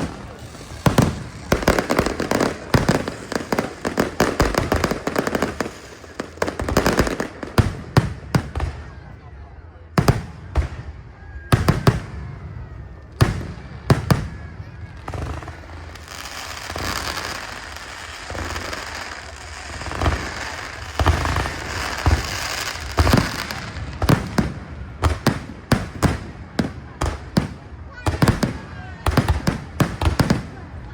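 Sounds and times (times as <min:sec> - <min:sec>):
dense fireworks crackling: 0:00.0 - 0:30.9
fireworks bangs: 0:00.0 - 0:30.9.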